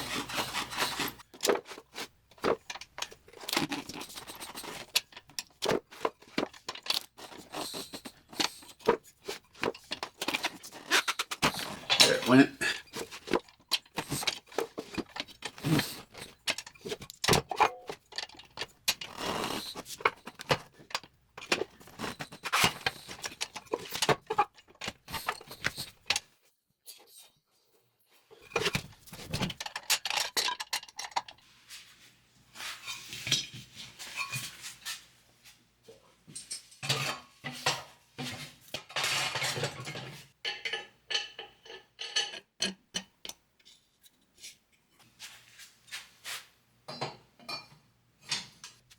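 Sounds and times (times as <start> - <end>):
steel tools clanking on metal rim: 0.0 - 26.2.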